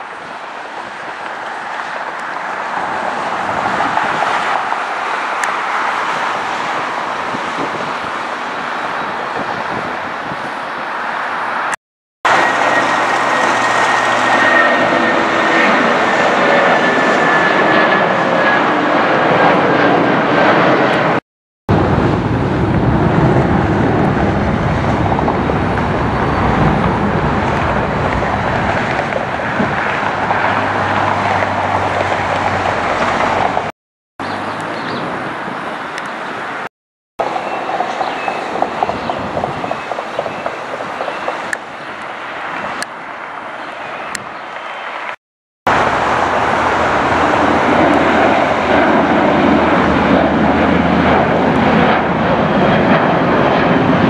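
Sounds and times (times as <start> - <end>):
high jet whine: 0.0 - 33.7, 34.3 - 54.0
jet airliners roaring: 0.0 - 54.0
deep low rumble: 21.7 - 30.3.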